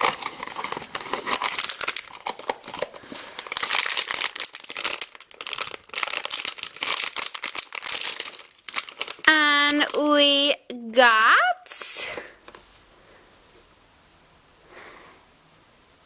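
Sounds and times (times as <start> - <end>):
packaging crinkling and tearing: 0.0 - 10.4.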